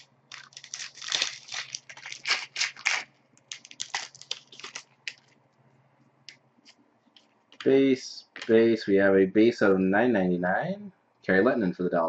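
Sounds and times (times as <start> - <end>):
card pack wrapper crinkling and ripping: 0.0 - 5.4.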